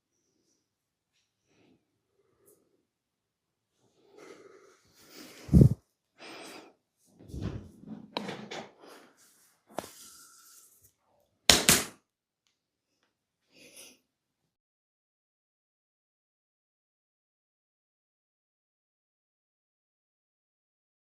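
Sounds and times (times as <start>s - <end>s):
hands rubbing skin: 5.4s - 5.8s, 9.2s - 10.8s.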